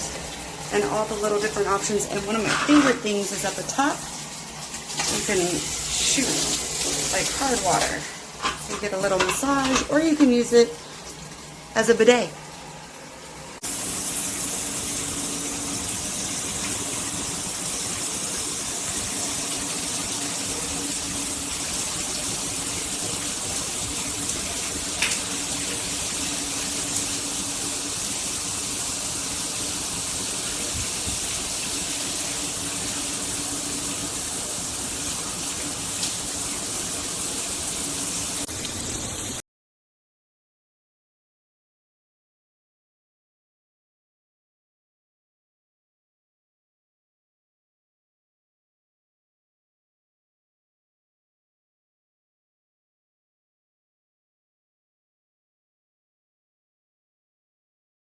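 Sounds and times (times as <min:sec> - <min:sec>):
water spraying from shower head: 0:00.0 - 0:12.0, 0:13.6 - 0:39.4.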